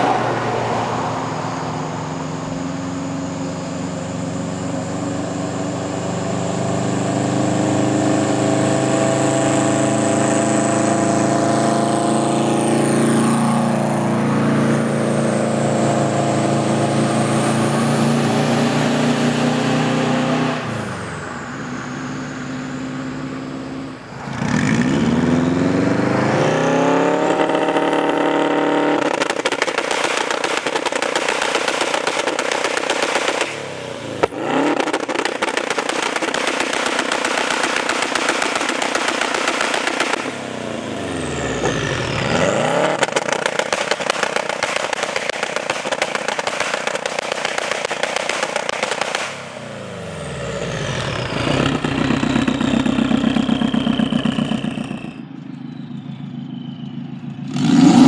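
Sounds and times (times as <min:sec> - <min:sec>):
car engine at high revs: 0:00.0 - 0:58.0
high whine: 0:49.4 - 0:58.0.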